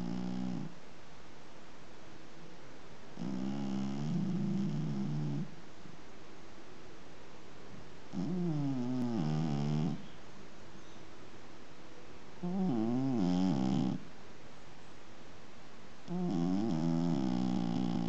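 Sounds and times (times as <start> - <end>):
cat snoring: 0.0 - 0.7, 3.2 - 5.5, 8.1 - 10.0, 12.4 - 14.0, 16.1 - 18.0.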